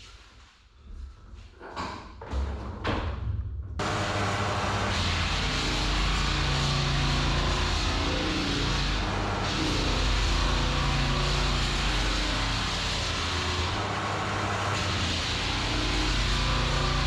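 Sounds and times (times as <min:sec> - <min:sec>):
floor sanding machine running: 0:03.8 - 0:17.0.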